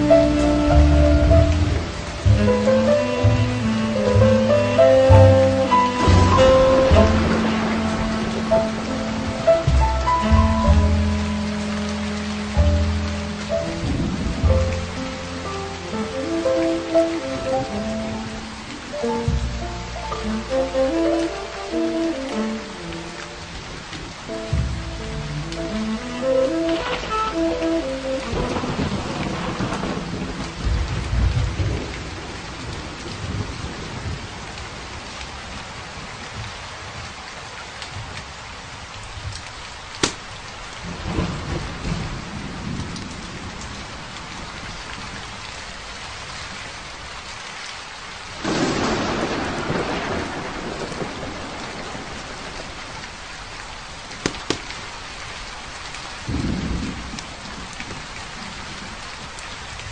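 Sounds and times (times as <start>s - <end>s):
thunder rumbling: 0.0s - 37.2s, 38.0s - 47.2s, 48.2s - 59.9s
heavy rain: 0.0s - 59.9s
sharp pops: 40.0s - 40.3s, 54.2s - 54.7s.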